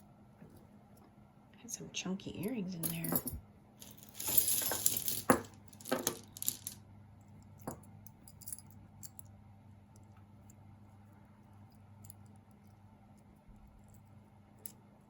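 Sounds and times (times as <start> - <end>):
jewelry clinking and rattling: 2.8 - 6.8, 7.6 - 9.3.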